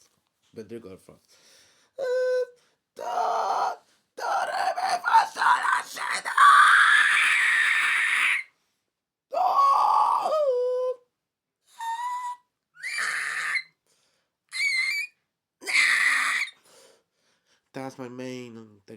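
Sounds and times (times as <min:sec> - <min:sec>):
man fry screaming: 0:03.0 - 0:08.4, 0:09.3 - 0:10.4, 0:12.8 - 0:13.6, 0:14.5 - 0:16.5.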